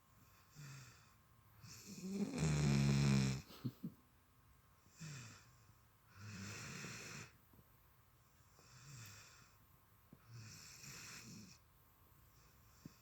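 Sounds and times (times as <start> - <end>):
dog snoring: 1.6 - 3.5, 6.1 - 7.3, 10.3 - 11.6.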